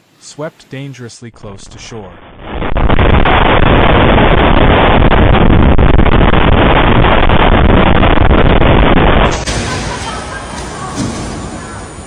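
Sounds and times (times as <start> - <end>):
strong wind buffeting microphone: 2.5 - 10.5.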